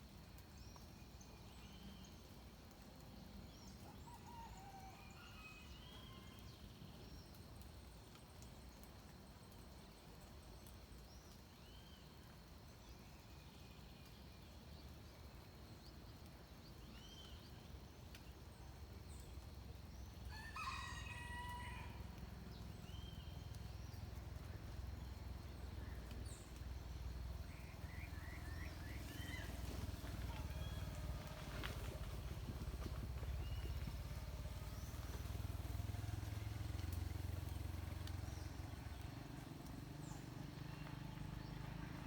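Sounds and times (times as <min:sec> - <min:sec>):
rooster crowing: 0:20.3 - 0:22.1
low steady rumble: 0:21.6 - 0:42.0.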